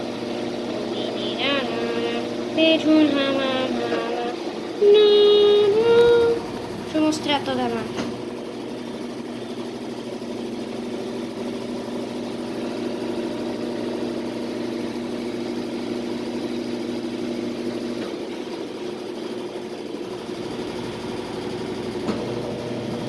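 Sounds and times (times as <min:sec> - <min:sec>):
washing machine spinning: 0:00.0 - 0:23.0.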